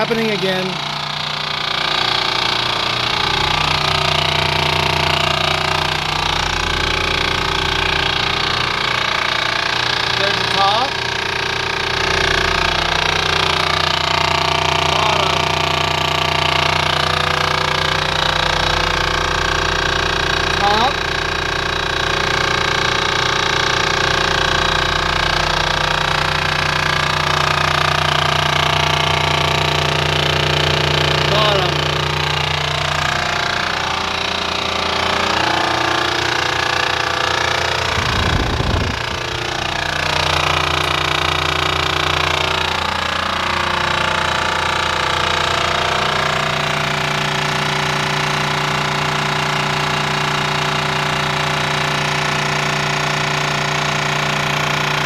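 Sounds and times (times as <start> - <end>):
compressor rattling buzz: 0.0 - 55.0.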